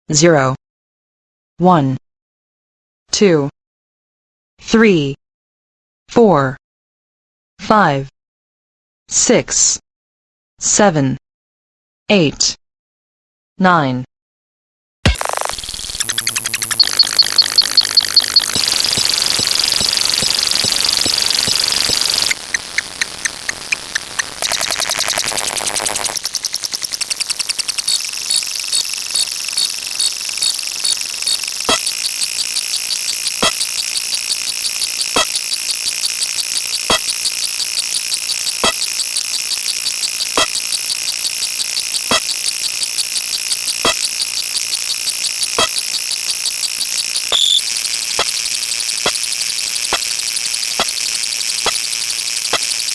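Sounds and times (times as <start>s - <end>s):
sharp electronic click: 15.1s - 52.9s
high-pitched electronic hiss: 15.2s - 52.9s
rapid pulsing electronic buzzes: 15.2s - 52.9s
shrill alarm-like tone: 15.2s - 52.9s.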